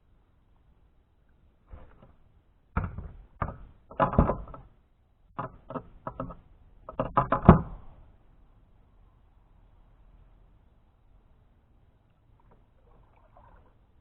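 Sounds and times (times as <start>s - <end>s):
gear knocking against kayak: 5.4s - 7.8s.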